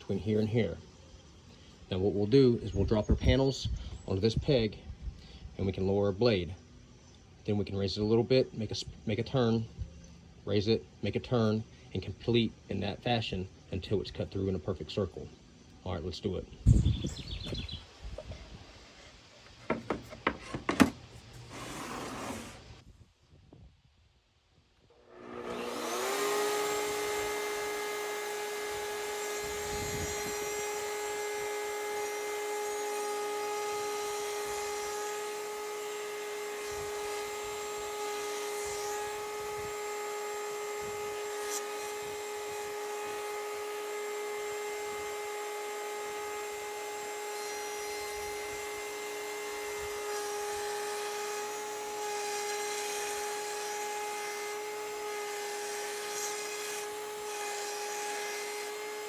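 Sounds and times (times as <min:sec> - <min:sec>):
router bit cutting panel: 0:25.0 - 0:59.0
router whining: 0:25.0 - 0:59.0.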